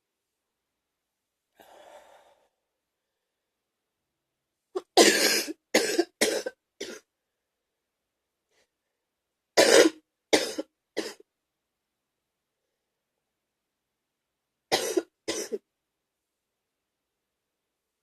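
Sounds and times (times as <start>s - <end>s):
person coughing wetly: 4.8s - 7.0s, 9.6s - 11.2s, 14.7s - 15.6s.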